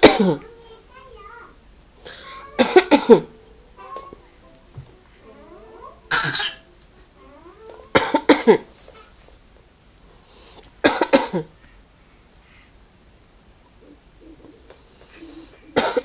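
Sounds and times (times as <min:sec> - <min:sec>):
person coughing: 0:00.0 - 0:00.4, 0:02.1 - 0:03.3, 0:06.1 - 0:06.6, 0:08.0 - 0:08.7, 0:10.8 - 0:11.5, 0:15.8 - 0:16.0.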